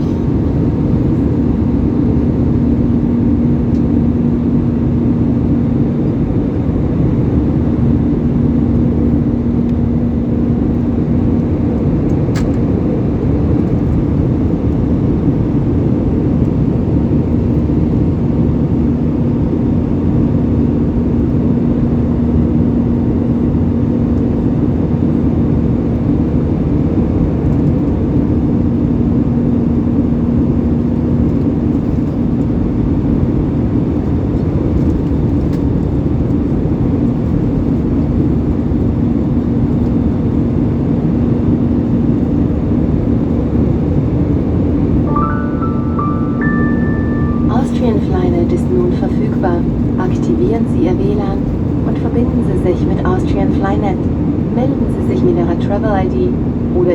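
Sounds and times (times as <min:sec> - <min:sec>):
airplane cabin engine drone: 0:00.0 - 0:56.9
small click: 0:12.3 - 0:12.6.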